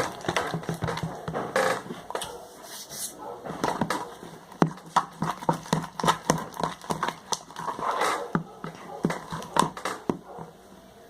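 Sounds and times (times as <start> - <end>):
slime squelching: 0.0 - 2.1, 3.6 - 10.4.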